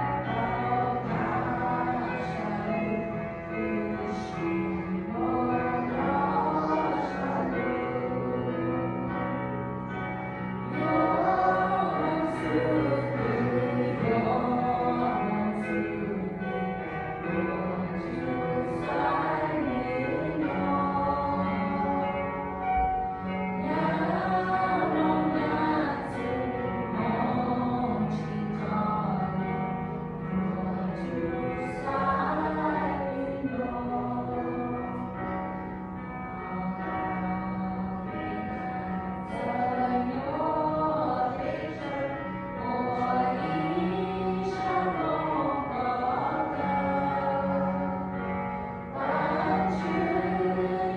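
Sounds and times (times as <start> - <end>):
music with singing voices: 0.0 - 50.9.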